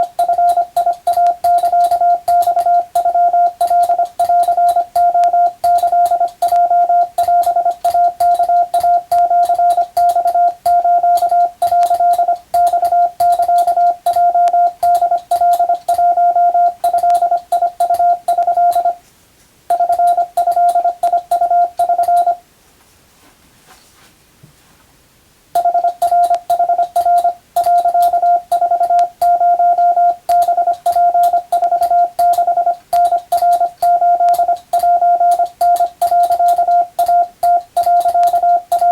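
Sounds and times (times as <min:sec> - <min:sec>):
faint keying clicks: 0:00.0 - 0:19.0, 0:19.7 - 0:22.4, 0:25.6 - 0:38.9
morse code tone: 0:00.0 - 0:19.0, 0:19.7 - 0:22.4, 0:25.6 - 0:38.9.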